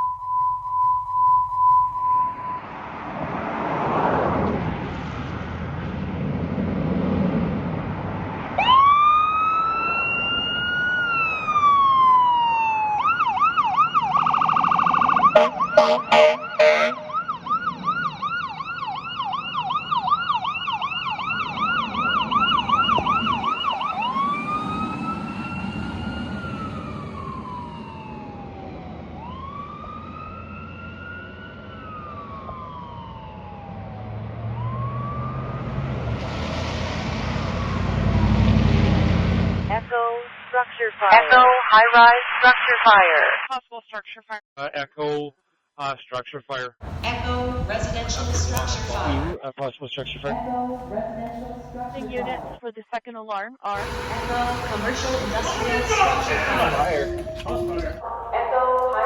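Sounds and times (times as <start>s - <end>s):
steady beep tone: 0.0s - 2.7s, 53.8s - 58.8s
fire engine siren: 0.0s - 5.5s, 8.4s - 39.9s, 46.8s - 49.4s, 53.8s - 59.0s
air horn blasts: 15.3s - 17.2s, 53.8s - 58.4s.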